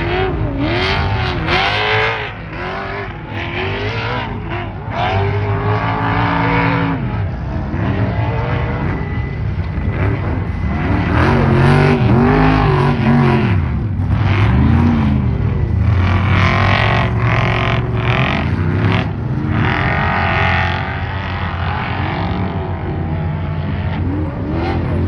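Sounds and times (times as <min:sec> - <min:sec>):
race truck engines revving: 0:00.0 - 0:25.0.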